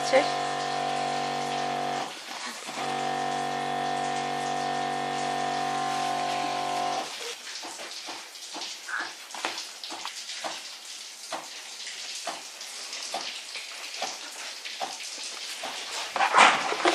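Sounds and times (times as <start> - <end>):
water splashing and trickling: 0.0 - 16.9
wet clicks and taps: 7.5 - 10.7, 12.2 - 12.5.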